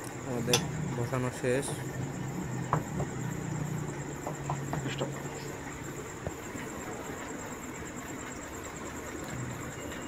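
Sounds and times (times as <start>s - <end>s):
low hum: 0.0s - 8.2s
high-pitched whine: 0.0s - 10.0s.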